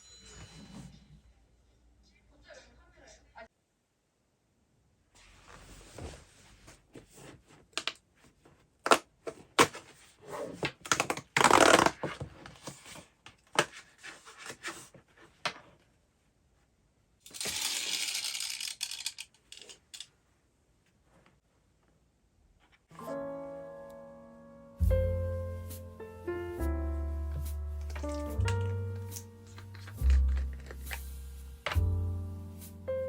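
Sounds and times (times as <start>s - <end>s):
small hard objects clicking: 17.3s - 20.1s, 27.9s - 31.1s.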